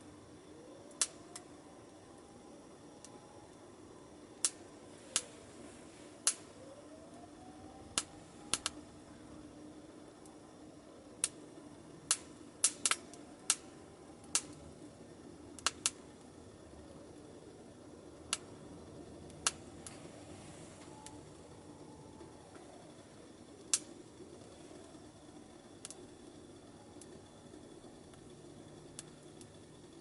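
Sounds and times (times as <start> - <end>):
faint low hum: 0.0 - 30.0
wood fire crackling: 0.0 - 30.0.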